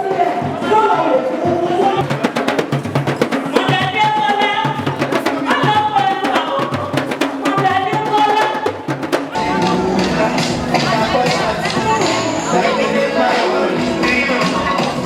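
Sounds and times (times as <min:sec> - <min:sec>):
steady drum beat: 0:00.0 - 0:15.0
clicking percussion: 0:09.4 - 0:15.0
held melody line: 0:09.4 - 0:15.0.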